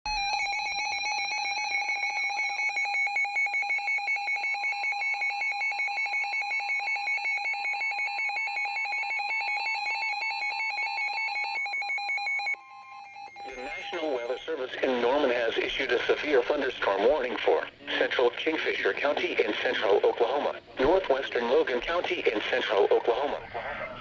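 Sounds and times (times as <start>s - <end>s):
warbling electronic alert alarm: 0.1s - 17.3s
faint steady warning tone: 0.1s - 24.0s.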